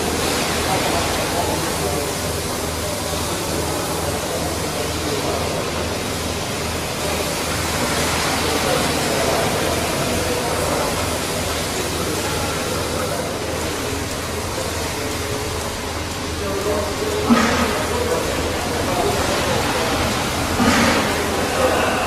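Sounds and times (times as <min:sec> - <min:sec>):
milking machine hissing and pulsing: 0:00.0 - 0:22.0.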